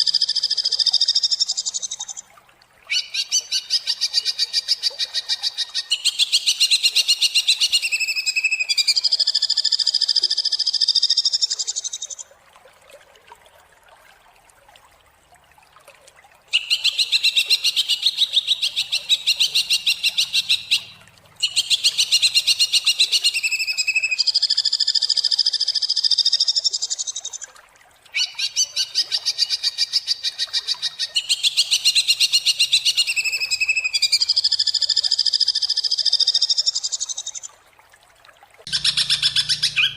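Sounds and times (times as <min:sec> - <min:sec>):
bird singing harsh phrases: 0:38.7 - 0:39.9.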